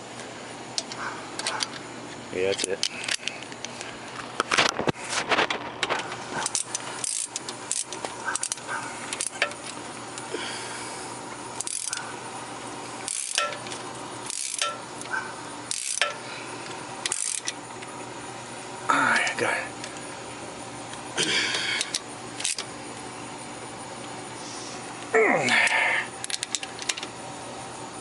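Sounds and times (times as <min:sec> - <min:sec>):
ratchet rasping: 0:06.4 - 0:10.3, 0:11.5 - 0:12.2, 0:13.0 - 0:17.6, 0:21.5 - 0:22.7
metal hand tools clinking: 0:13.1 - 0:14.8.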